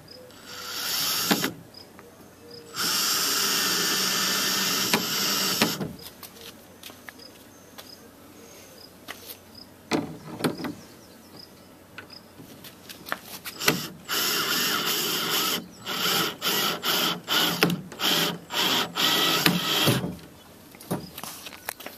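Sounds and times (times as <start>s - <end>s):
power drill drilling: 0.5s - 1.6s, 2.7s - 5.8s, 13.6s - 20.1s.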